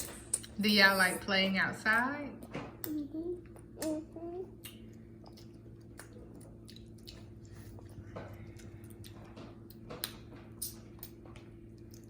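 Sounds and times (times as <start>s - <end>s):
faint steady hum: 0.0s - 12.0s
wet chewing of spaghetti: 4.6s - 12.0s.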